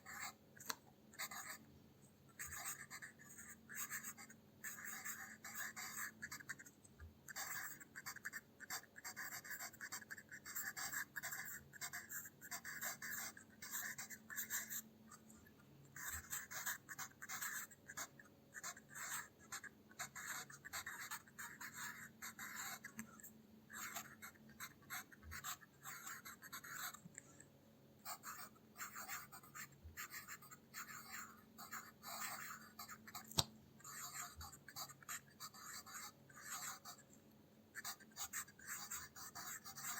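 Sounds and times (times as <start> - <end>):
pencil scratching on paper: 0.0 - 0.4, 1.1 - 1.7, 2.3 - 27.4, 28.0 - 37.0, 37.8 - 39.9
sharp click: 33.3 - 33.6.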